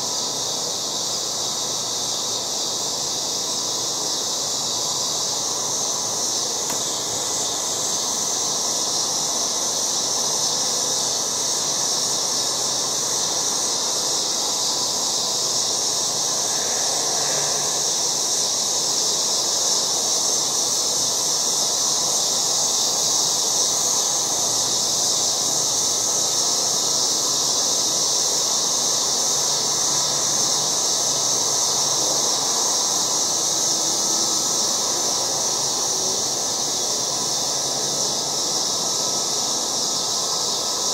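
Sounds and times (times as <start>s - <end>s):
cicadas buzzing: 0.0s - 40.9s.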